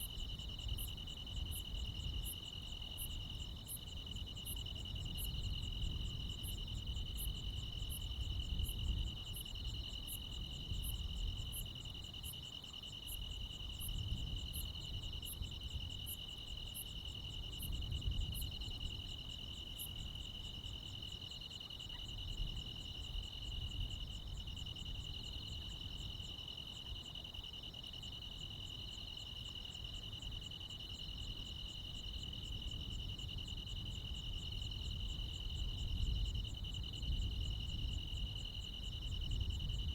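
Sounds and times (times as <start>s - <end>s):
insects chirping: 0.0s - 39.9s.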